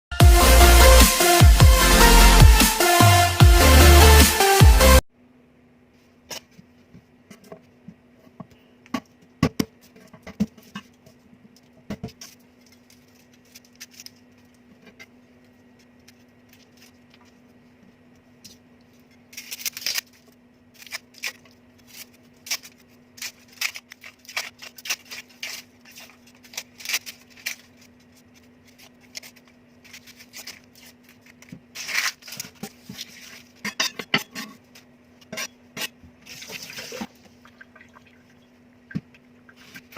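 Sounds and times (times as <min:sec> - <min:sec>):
faint steady hum: 0:05.1 - 0:39.9
rustling: 0:09.8 - 0:33.8.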